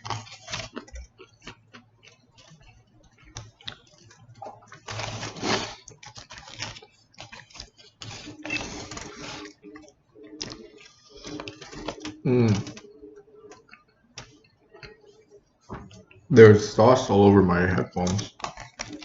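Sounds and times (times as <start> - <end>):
person chewing food: 0.0 - 16.3, 18.1 - 19.0.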